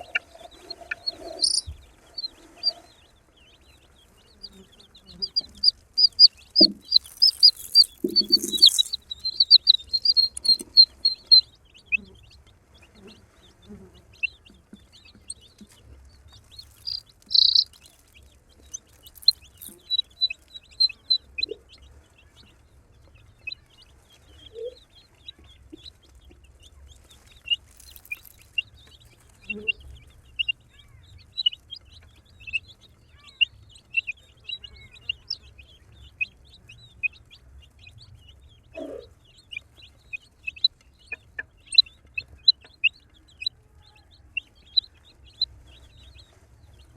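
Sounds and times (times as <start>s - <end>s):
rustle: 0.0s - 11.3s, 12.3s - 22.6s, 23.7s - 31.2s
baby chicks cheeping: 0.0s - 46.9s
low clucks: 5.1s - 12.2s.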